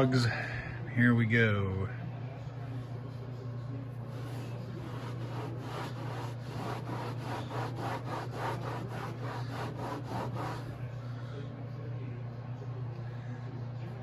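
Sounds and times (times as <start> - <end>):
steady low hum: 0.0 - 14.0
scrubbing on textured boat deck: 4.1 - 10.9.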